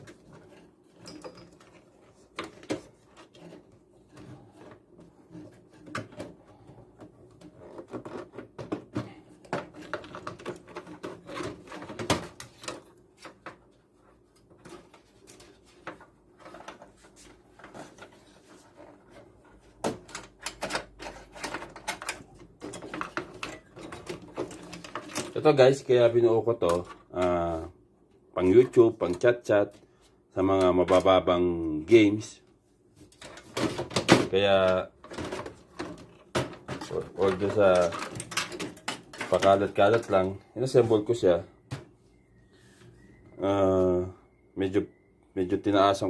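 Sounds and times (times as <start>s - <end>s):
hands handling computer parts: 0.0s - 27.4s, 33.0s - 42.3s.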